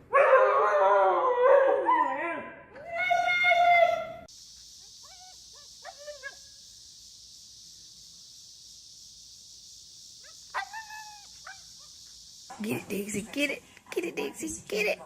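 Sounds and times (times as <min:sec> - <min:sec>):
steady hiss: 0:04.2 - 0:15.0.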